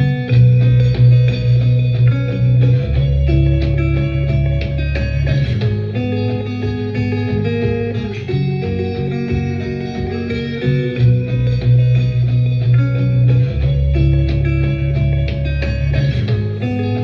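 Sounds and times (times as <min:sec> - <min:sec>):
guitar music with heavy bass: 0:00.0 - 0:17.0.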